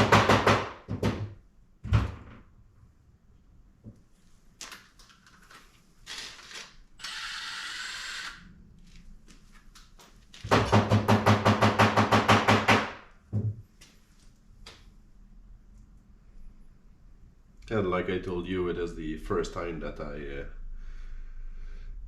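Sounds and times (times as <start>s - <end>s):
power tool whirring: 6.1s - 8.5s
knock: 10.5s - 13.6s.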